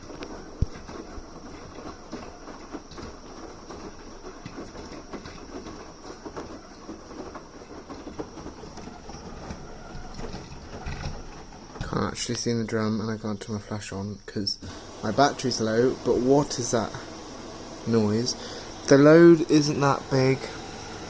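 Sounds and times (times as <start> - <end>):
washing machine running: 0.0 - 13.0, 14.6 - 21.0.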